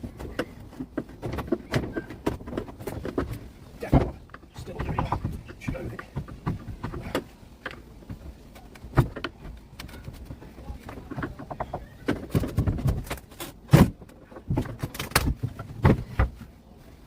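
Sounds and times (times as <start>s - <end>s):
knocking on wood: 0.4s - 7.3s.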